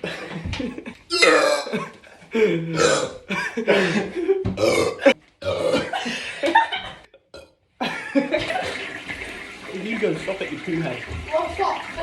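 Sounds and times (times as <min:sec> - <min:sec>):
person belching loudly: 0:01.1 - 0:01.8, 0:02.7 - 0:03.2, 0:04.6 - 0:06.0.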